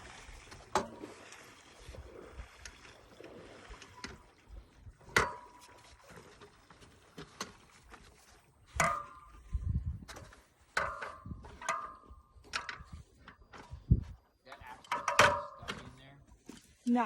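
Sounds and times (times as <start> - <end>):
knocks and clicks handling wheelchair: 8.7 - 9.3, 10.0 - 16.7.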